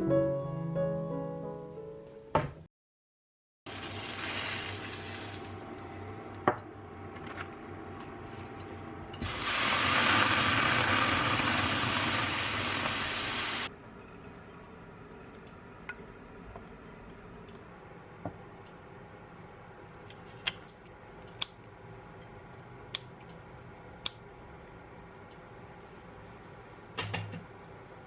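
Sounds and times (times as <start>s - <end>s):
loud steady hiss: 9.2s - 13.7s.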